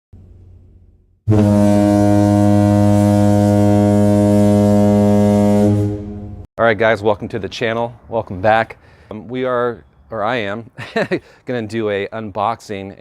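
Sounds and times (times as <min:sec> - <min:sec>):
foghorn blast: 0:01.3 - 0:06.5.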